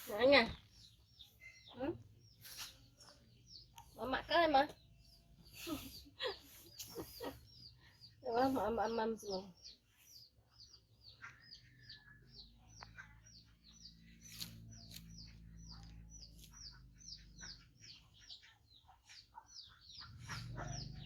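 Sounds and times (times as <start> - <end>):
small bird chirping: 0.0 - 21.0.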